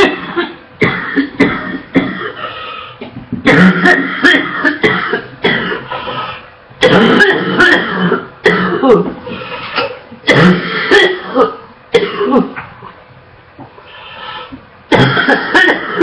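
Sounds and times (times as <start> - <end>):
woman coughing: 0.0 - 2.5, 3.4 - 5.9, 6.8 - 9.2, 9.8 - 12.6, 14.9 - 16.0.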